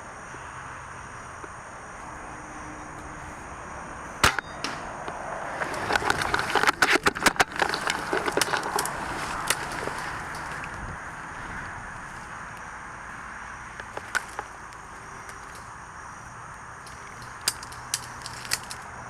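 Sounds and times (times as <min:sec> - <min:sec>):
airsoft gun shots: 0:04.2 - 0:04.9.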